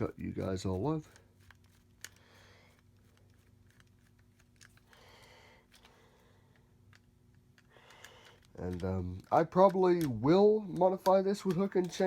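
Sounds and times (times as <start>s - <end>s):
low steady hum: 0.0s - 12.0s
screwdriver clicks and scrape: 6.9s - 12.0s.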